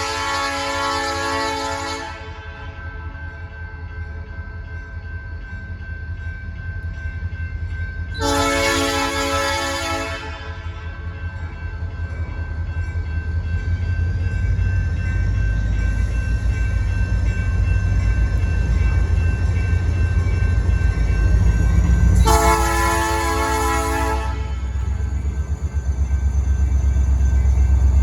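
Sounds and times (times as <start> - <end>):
train horn blast: 0.0 - 2.5, 8.2 - 10.8, 22.2 - 25.0
diesel locomotive rumbling: 0.0 - 3.5, 5.8 - 28.0.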